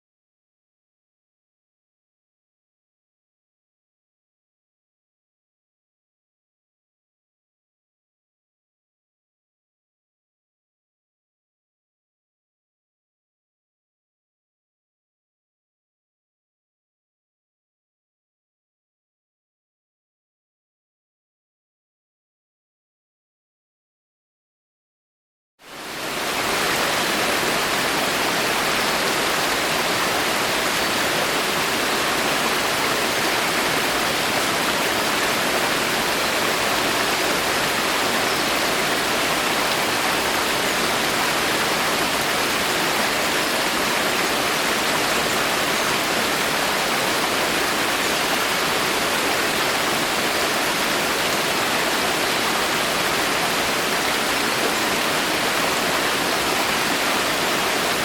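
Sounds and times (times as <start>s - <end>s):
steady rain in forest: 25.7s - 58.0s.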